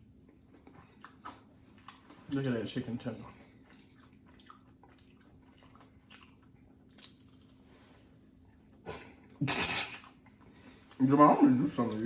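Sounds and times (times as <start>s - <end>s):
food crunching: 0.2s - 8.8s.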